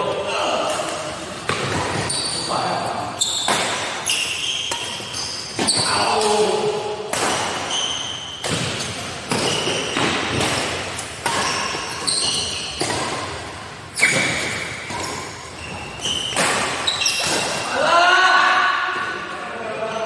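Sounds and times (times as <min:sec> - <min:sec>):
rackets hitting shuttlecock: 0:03.3 - 0:17.8.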